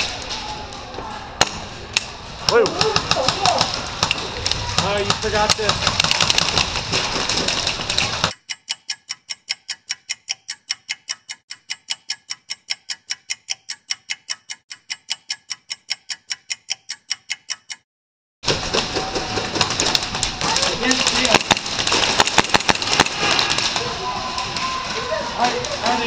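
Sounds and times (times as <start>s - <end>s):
outdoor game noise: 0.0s - 17.8s, 18.4s - 26.0s
rapid even ticking: 7.4s - 17.8s.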